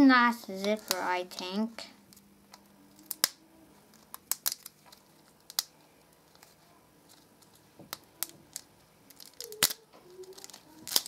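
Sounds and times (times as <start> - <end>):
toy packaging clicking: 2.9 - 11.0.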